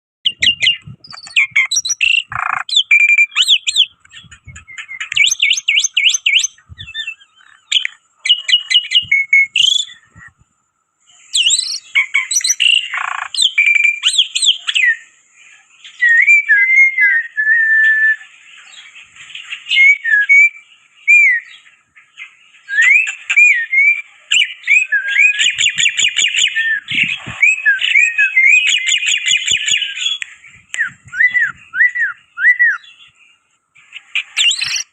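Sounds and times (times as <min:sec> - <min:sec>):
bird singing whistles and chatter: 0:00.2 - 0:10.4, 0:11.2 - 0:15.2, 0:15.8 - 0:18.9, 0:19.5 - 0:21.6, 0:22.6 - 0:33.2, 0:33.8 - 0:34.9.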